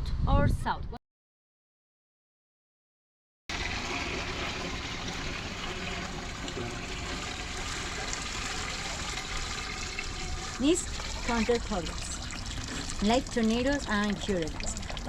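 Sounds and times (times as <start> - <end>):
water draining from basin: 3.5 - 15.0.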